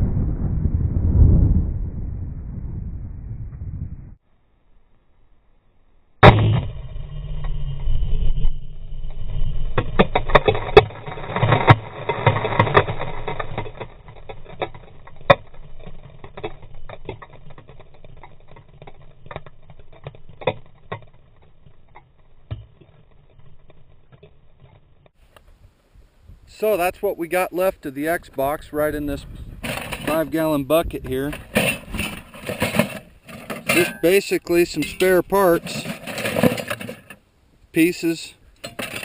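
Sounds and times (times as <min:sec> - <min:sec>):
sharp clattering knocks: 0:29.6 - 0:37.2, 0:38.6 - 0:39.0.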